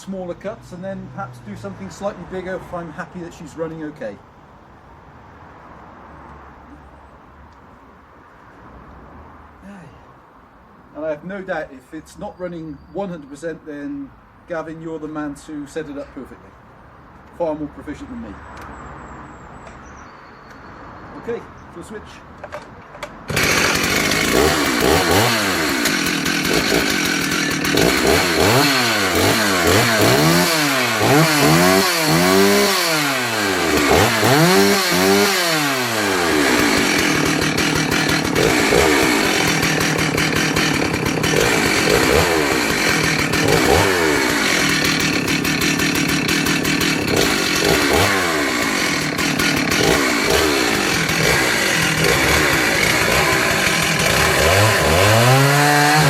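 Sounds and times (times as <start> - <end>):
chainsaw revving: 23.3 - 56.0.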